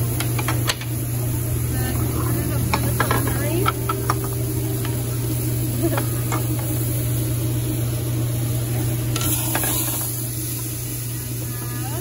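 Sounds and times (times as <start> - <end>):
low hum: 0.8 - 9.2.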